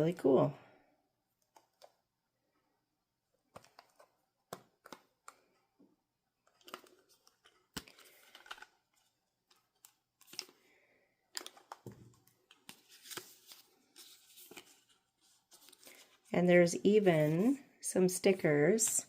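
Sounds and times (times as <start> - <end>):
packaging clicks: 3.4 - 5.6, 6.4 - 10.6, 11.3 - 13.6
paper and plastic rustling: 6.4 - 10.7, 11.3 - 17.6.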